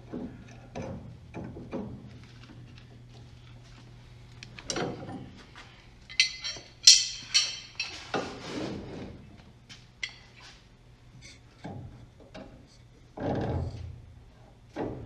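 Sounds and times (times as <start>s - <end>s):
metal tools clinking and knocking: 6.1s - 8.0s, 10.0s - 10.3s.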